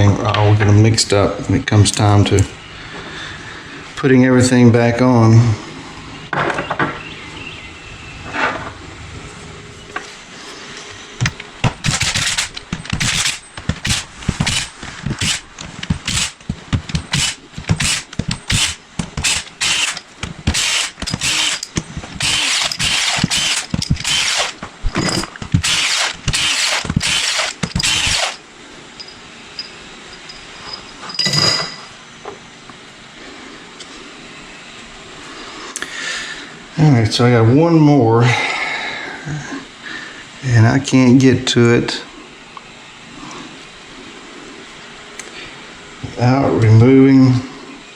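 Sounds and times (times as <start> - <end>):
ratchet wrench ratcheting: 11.8 - 28.4
metal clink ringing: 29.0 - 31.9.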